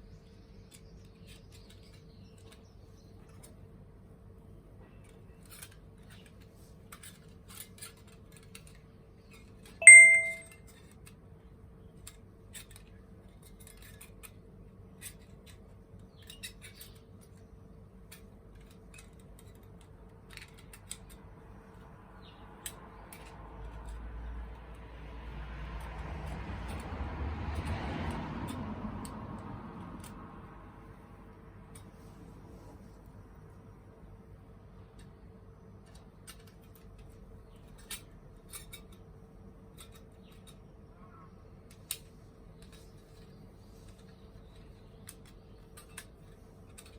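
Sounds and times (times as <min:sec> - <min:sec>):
ringing metallic clink: 0:09.8 - 0:10.6.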